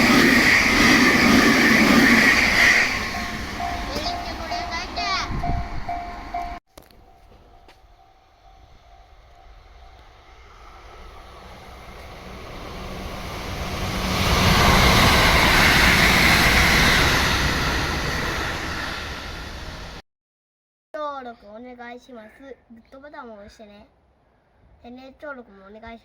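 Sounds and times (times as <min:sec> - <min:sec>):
train passing: 0:00.0 - 0:20.0.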